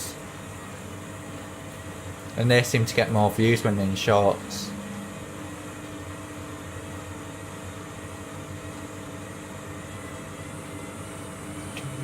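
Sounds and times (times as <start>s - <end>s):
washing machine spinning: 0.0s - 12.0s.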